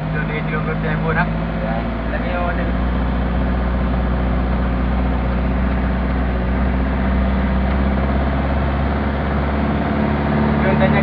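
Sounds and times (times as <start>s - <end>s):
car engine running: 0.0s - 11.0s.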